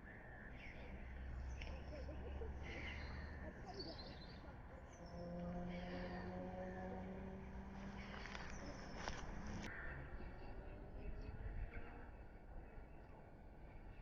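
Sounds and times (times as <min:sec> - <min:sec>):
small birds chirping: 0:00.0 - 0:11.5.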